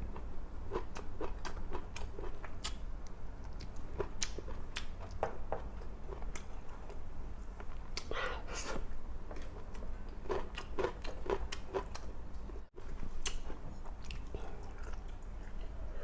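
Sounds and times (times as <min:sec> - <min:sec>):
low steady hum: 0:00.0 - 0:16.0
person chewing and biting food: 0:07.7 - 0:12.1, 0:12.8 - 0:15.6.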